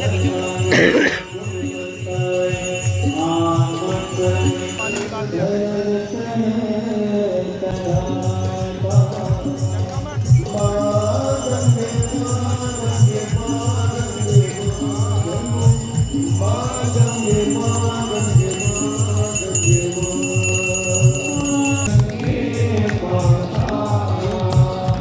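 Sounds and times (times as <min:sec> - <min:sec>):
group singing: 0:00.0 - 0:25.0
steady drum beat: 0:07.8 - 0:25.0.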